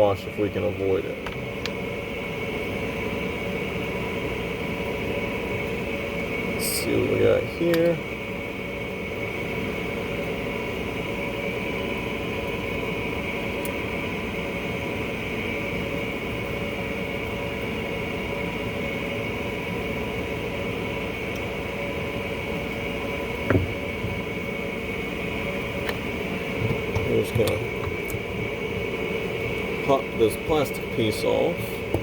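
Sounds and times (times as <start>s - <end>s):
mechanical hum of equipment: 0.0s - 32.0s.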